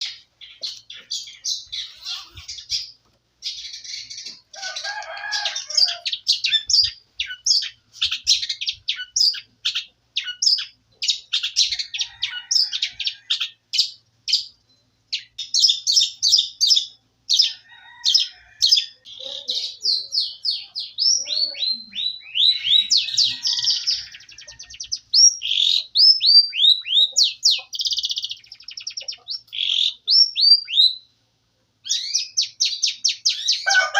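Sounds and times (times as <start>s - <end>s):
canary singing chirps and trills: 0.0s - 33.9s.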